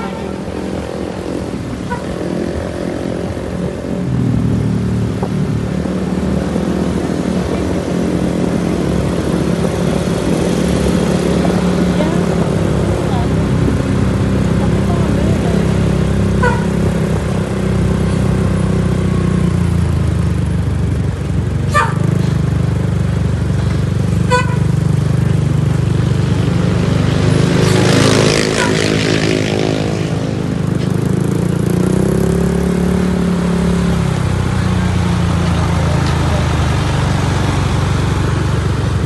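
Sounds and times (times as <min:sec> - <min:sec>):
road traffic engine drone: 0:00.0 - 0:39.0.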